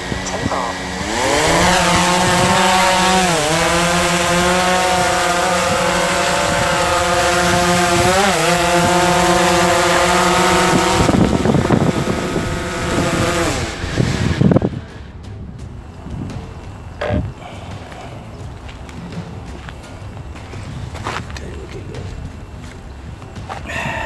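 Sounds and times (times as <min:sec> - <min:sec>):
loud rushing noise: 0:00.0 - 0:16.3
drone propellers buzzing: 0:00.0 - 0:24.0.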